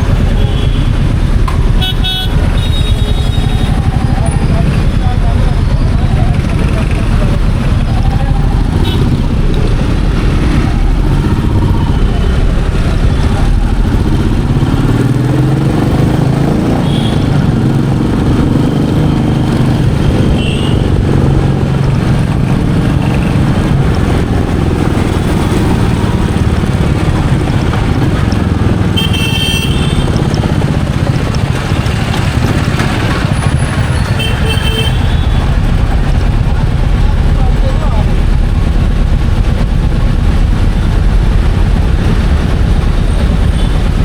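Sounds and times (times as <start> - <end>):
motorcycle engine running: 0.0 - 44.0.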